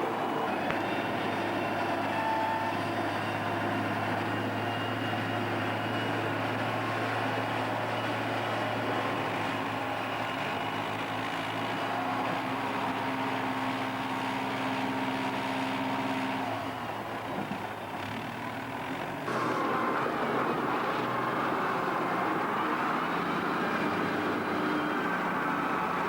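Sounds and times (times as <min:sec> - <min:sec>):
forage harvester running: 0:00.0 - 0:26.0.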